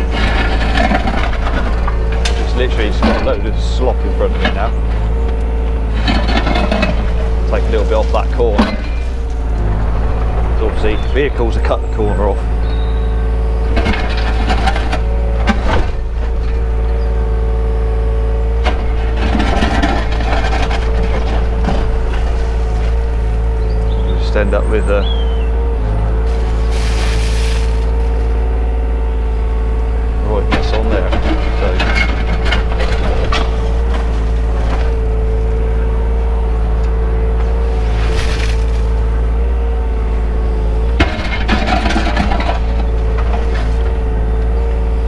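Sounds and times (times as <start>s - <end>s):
bucket cracking and scraping ground: 0.0s - 25.0s, 26.2s - 28.6s, 30.2s - 39.7s, 40.5s - 44.7s
excavator diesel engine running: 0.0s - 45.0s
hydraulic whine: 0.0s - 45.0s.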